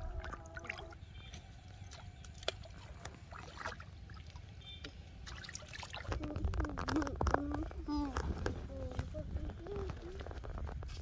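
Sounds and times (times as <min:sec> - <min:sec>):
water trickling and splashing: 0:00.0 - 0:11.0.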